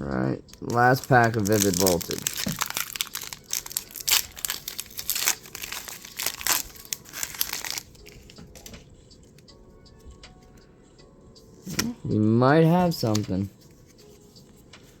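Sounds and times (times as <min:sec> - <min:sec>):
wrapper crinkling and tearing: 0:00.6 - 0:08.7.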